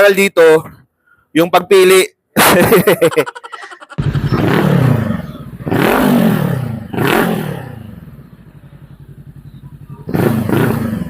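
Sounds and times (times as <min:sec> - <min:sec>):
motorcycle engine ticking idle: 0:04.0 - 0:07.0, 0:07.8 - 0:11.0
motorcycle engine revving: 0:04.0 - 0:11.0.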